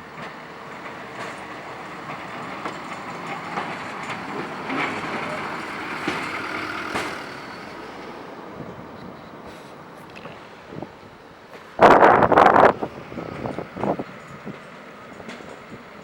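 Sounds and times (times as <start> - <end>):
rail vehicle moving on track: 0.0 - 16.0
sharp knocks and clatter: 2.6 - 7.5.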